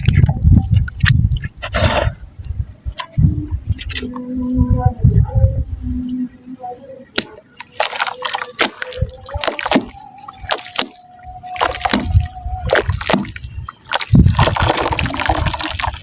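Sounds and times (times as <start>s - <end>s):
wet mud crumbling into water: 7.6s - 16.0s.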